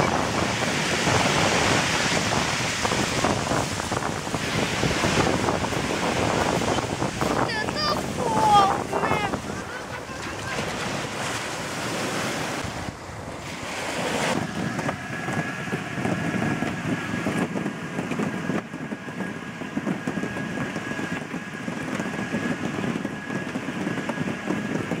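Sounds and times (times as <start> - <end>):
surf on pebble beach: 0.0 - 17.6
wind buffeting microphone: 0.0 - 25.0.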